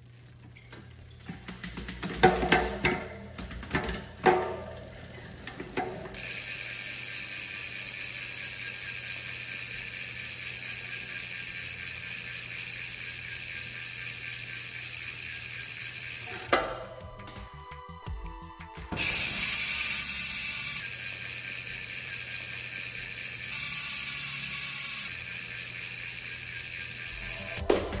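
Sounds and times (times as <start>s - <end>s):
bike hub freewheeling buzz: 0.0s - 16.7s, 19.0s - 27.7s.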